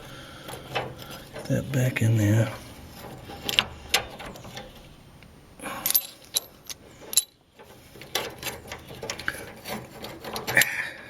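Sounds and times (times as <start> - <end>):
metal parts clicking and clinking: 2.5 - 11.0.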